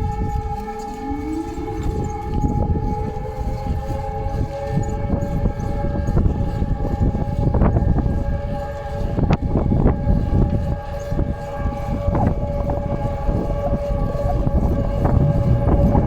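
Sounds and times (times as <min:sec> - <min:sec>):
alarm sirens steady tone: 0:00.0 - 0:16.0
low rumble: 0:11.5 - 0:16.0.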